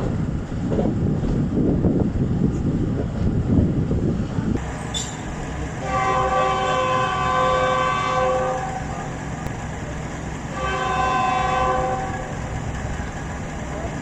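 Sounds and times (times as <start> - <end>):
low rumble of train: 0.0 - 14.0
locomotive air horn: 5.8 - 9.1, 10.5 - 12.4.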